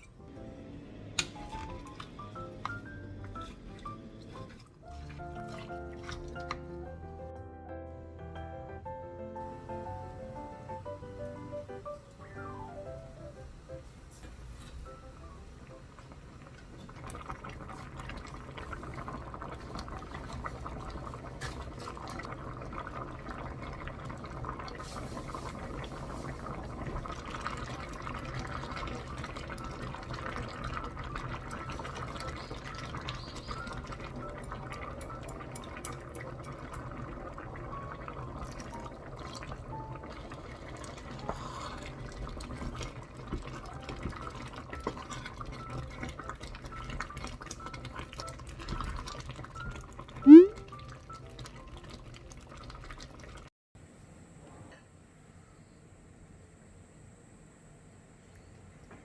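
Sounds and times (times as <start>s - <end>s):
stew bubbling in a pot: 0.0s - 7.2s, 14.5s - 53.5s.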